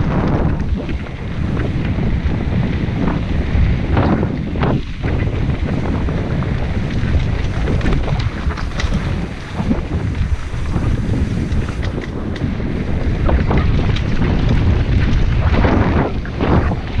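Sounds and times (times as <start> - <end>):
bike clicks and rattles: 0.0 - 17.0
rushes of noise: 0.0 - 17.0
wind buffeting microphone: 0.0 - 17.0
tyre rumble on dirt: 3.7 - 17.0.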